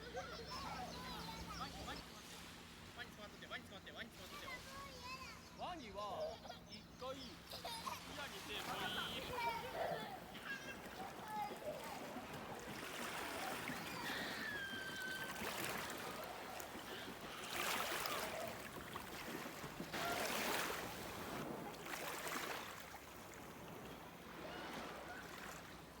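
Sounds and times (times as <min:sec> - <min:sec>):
small waves washing onto shore: 0:00.0 - 0:05.4, 0:07.0 - 0:26.0
faint gliding call: 0:08.0 - 0:26.0.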